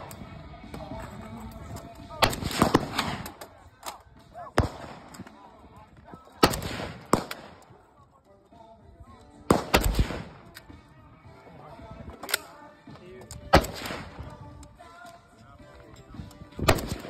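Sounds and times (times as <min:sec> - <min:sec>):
rifle gunshots with echo: 0:02.2 - 0:05.6, 0:06.3 - 0:07.8, 0:09.4 - 0:10.6, 0:13.5 - 0:14.4, 0:16.6 - 0:17.0.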